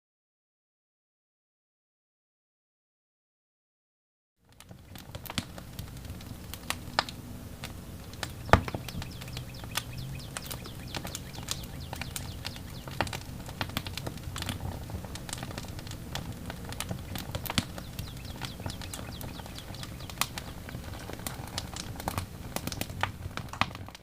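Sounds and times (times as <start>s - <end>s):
low steady hum: 4.5s - 24.0s
sharp clicks and crackling: 4.5s - 24.0s.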